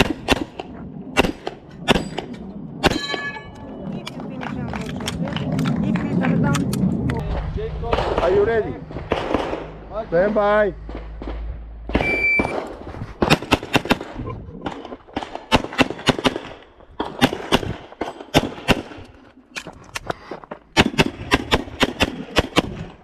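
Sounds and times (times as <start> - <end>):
pistol shots: 9.1 - 9.8, 15.1 - 19.0, 20.8 - 22.9
shot timer beep: 12.0 - 12.6.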